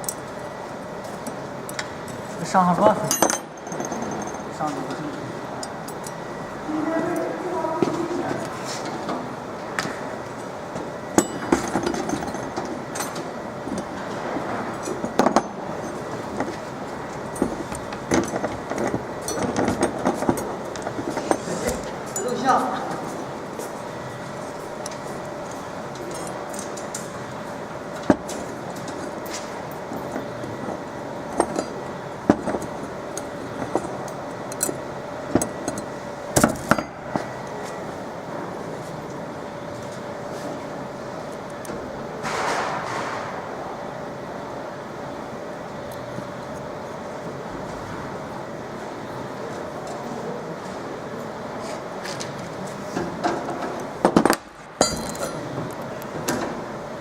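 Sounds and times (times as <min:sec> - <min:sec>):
background hum: 0:00.0 - 0:57.0
metal tools clinking and knocking: 0:03.0 - 0:04.8, 0:54.8 - 0:55.5.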